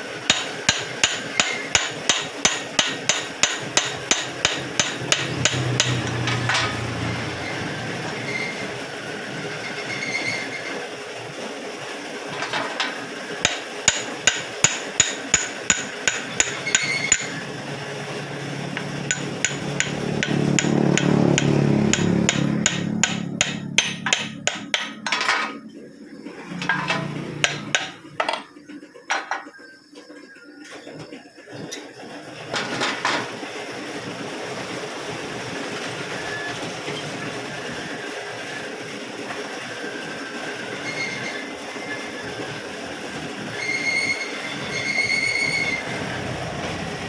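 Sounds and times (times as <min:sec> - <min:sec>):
hammer striking metal: 0:00.3 - 0:07.0, 0:13.5 - 0:17.6, 0:18.7 - 0:25.5, 0:26.6 - 0:28.4
low rumble: 0:45.8 - 0:47.0.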